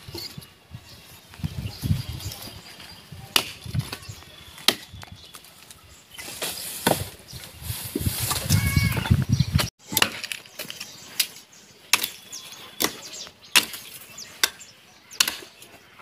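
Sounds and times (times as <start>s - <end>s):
axe chopping tree trunk: 4.6s - 5.0s, 11.9s - 12.2s, 12.8s - 14.6s, 15.2s - 15.6s.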